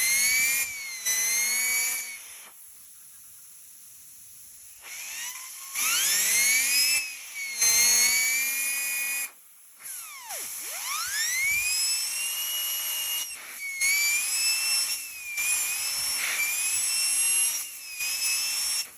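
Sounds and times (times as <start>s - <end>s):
vacuum motor fan whine: 0.0s - 2.6s, 4.6s - 18.9s.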